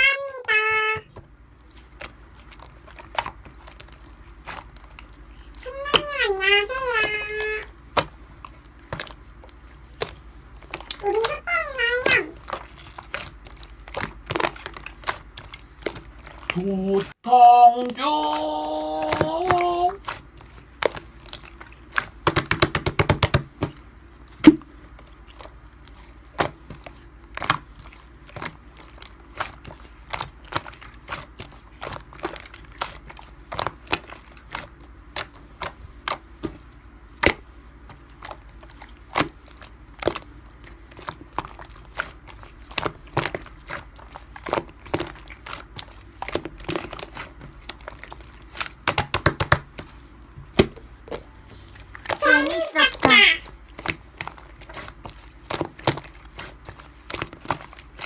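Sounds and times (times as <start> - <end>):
slime squished by hand clicking: 48.8 - 49.7.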